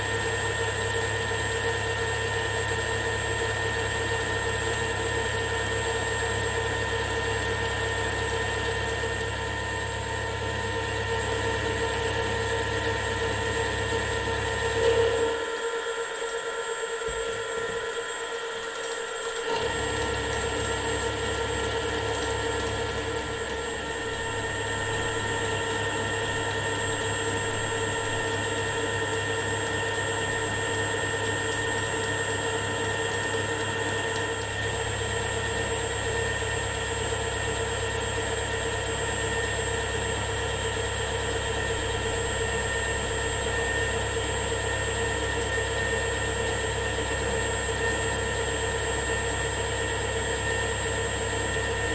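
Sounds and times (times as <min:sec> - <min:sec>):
milling machine spindle whine: 0:00.0 - 0:51.9
low hum: 0:19.6 - 0:36.7.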